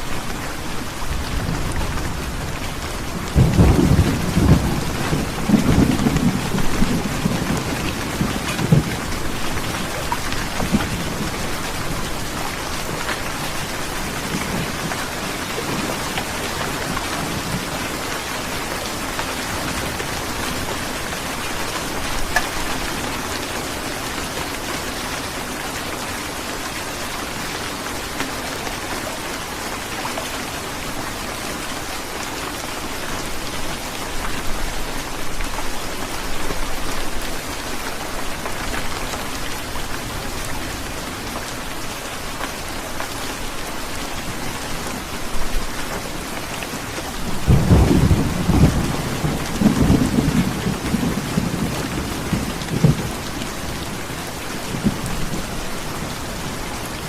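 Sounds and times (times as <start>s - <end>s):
heavy rain falling: 0.0s - 57.0s
thunder rumbling: 47.2s - 53.3s.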